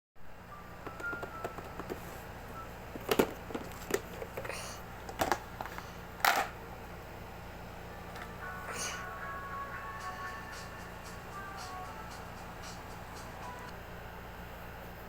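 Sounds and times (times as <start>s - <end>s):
steady low hum: 0.2s - 15.0s
packaging clicks and crinkles: 3.0s - 6.5s.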